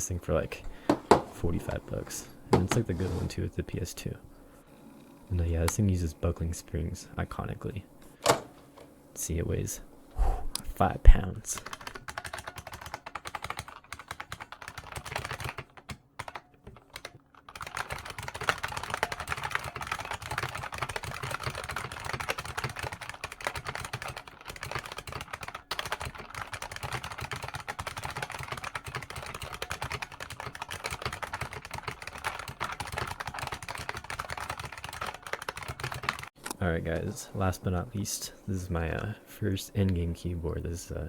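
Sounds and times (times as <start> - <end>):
keyboard typing clicks: 11.6 - 36.3.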